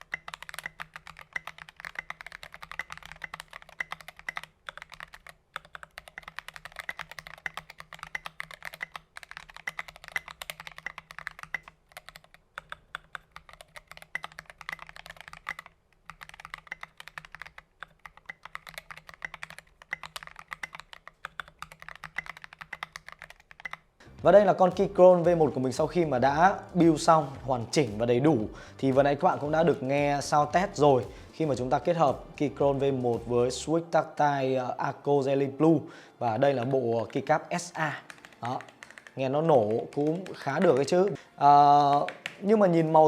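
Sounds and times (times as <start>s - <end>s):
rapid mechanical keyboard typing: 0.0s - 23.9s, 34.2s - 43.0s.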